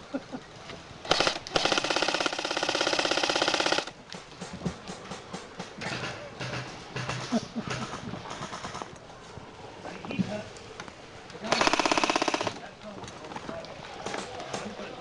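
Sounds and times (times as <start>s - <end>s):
airsoft gun automatic burst: 1.1s - 3.9s, 11.5s - 12.6s
airsoft guns popping: 1.1s - 8.9s, 11.5s - 12.6s.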